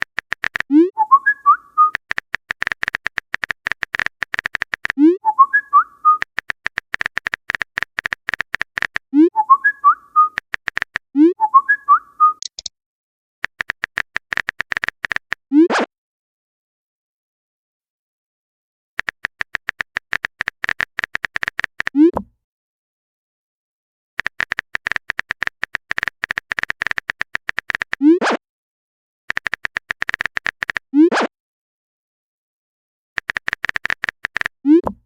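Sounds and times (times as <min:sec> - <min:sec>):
rapid clicks: 0:00.0 - 0:00.7, 0:02.0 - 0:05.0, 0:06.2 - 0:09.1, 0:10.3 - 0:11.1, 0:13.4 - 0:15.4, 0:19.0 - 0:22.0, 0:24.2 - 0:28.0, 0:29.3 - 0:30.8, 0:33.2 - 0:34.6
quick whistled notes: 0:01.0 - 0:02.1, 0:05.2 - 0:06.4, 0:09.4 - 0:10.8.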